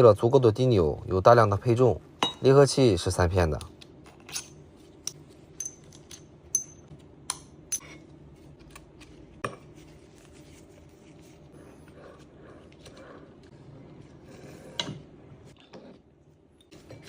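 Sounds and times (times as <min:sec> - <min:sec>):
metal parts and tools clinking: 0:04.1 - 0:06.9.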